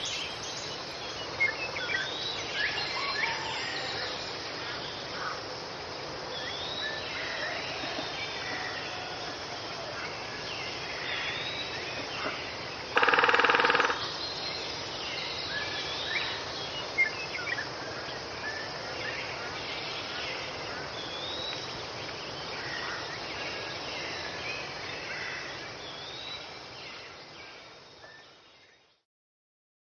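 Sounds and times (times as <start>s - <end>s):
insects hissing: 0.0s - 28.6s
loud bird call: 12.9s - 14.1s.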